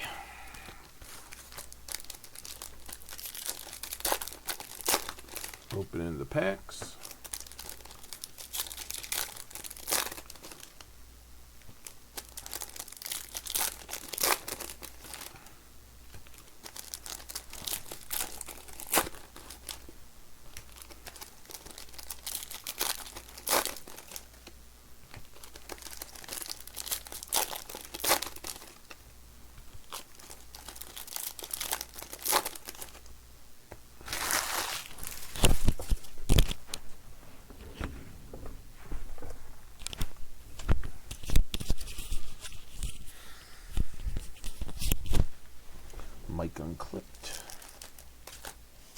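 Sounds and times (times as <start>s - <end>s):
foil wrappers tearing and crinkling: 1.0s - 10.9s, 11.8s - 15.5s, 16.1s - 19.9s, 20.5s - 24.5s, 25.1s - 29.0s, 29.7s - 33.1s, 34.0s - 36.7s, 47.1s - 48.9s.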